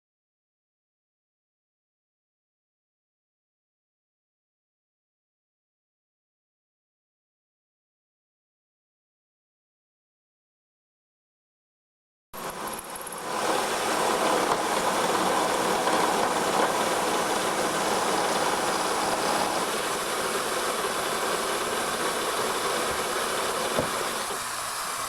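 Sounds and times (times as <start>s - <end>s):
milling machine cutting metal: 12.4s - 25.0s.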